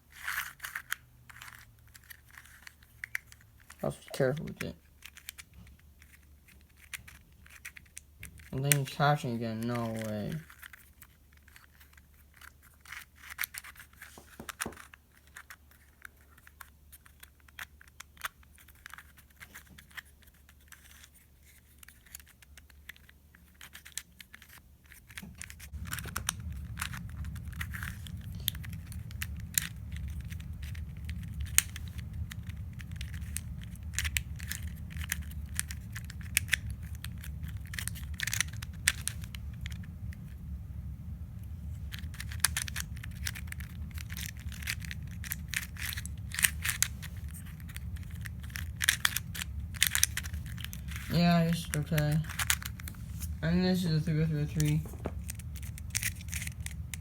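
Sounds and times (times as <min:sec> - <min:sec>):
plastic puzzle cube clicking: 0:00.1 - 0:08.9, 0:09.6 - 0:40.3, 0:41.8 - 0:53.4, 0:54.6 - 0:57.0
steady low rumble: 0:25.2 - 0:57.0.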